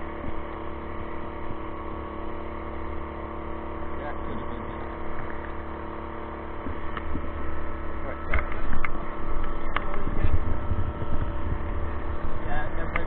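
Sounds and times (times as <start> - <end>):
small generator engine running: 0.0 - 13.0
wind rumbling on microphone: 6.5 - 13.0.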